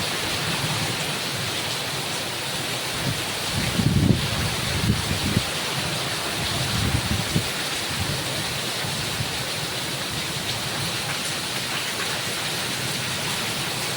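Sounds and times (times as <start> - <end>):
heavy rain pouring: 0.0 - 13.9
gusty wind rumbles: 3.0 - 9.4.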